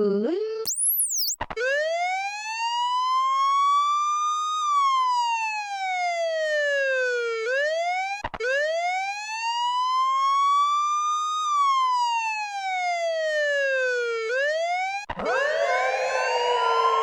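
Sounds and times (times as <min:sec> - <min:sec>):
harsher siren rising: 0:00.7 - 0:01.4, 0:15.1 - 0:17.0
siren wailing: 0:00.7 - 0:01.4, 0:15.1 - 0:17.0.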